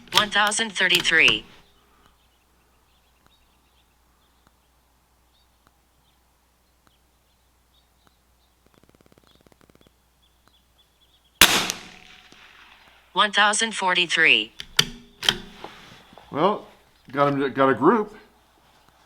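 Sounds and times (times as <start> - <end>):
rifle shot with echo: 11.4 - 13.1.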